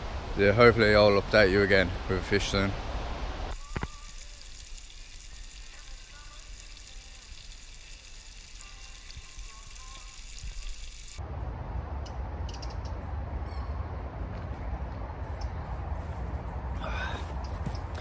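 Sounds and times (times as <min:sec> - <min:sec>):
bacon sizzling: 0:03.5 - 0:11.2.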